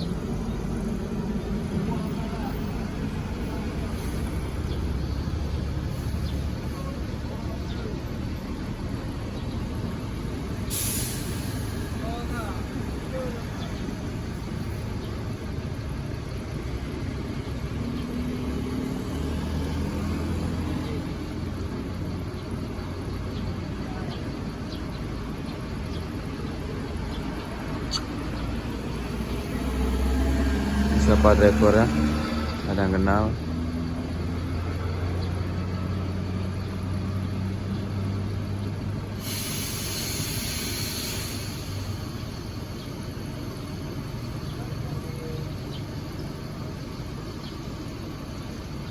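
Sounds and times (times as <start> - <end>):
vehicle engine rumbling: 0.0 - 48.9
loud steady hiss: 10.6 - 13.3, 38.9 - 44.5.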